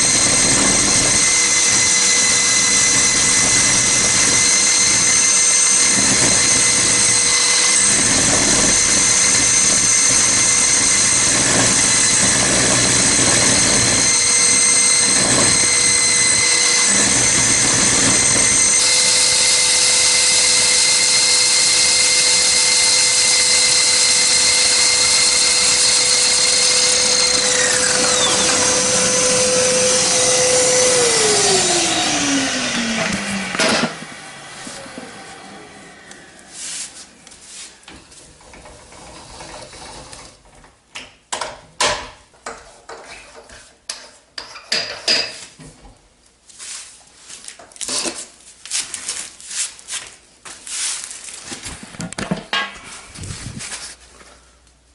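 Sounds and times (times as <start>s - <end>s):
drill bit grinding: 0.0s - 34.2s, 38.8s - 40.4s
core drill motor whine: 0.0s - 36.6s, 38.5s - 40.4s.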